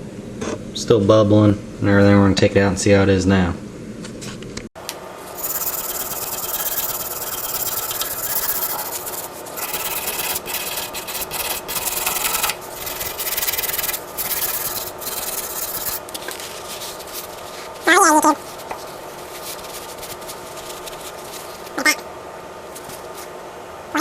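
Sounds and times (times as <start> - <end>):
scrubbing rust off metal: 5.4 - 21.7.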